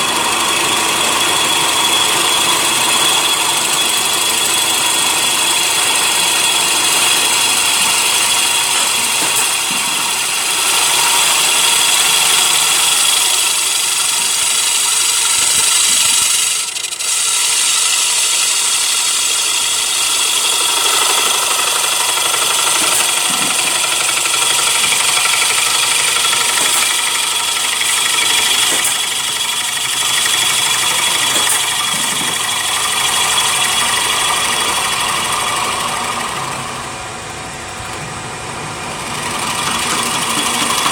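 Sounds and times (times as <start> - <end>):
wood lathe running with whine: 0.0 - 40.9.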